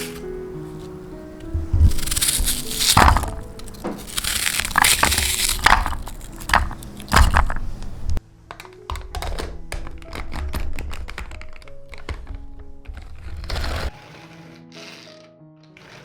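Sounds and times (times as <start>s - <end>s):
crunching and rustling objects: 0.0s - 8.2s
soft background music: 0.0s - 16.0s.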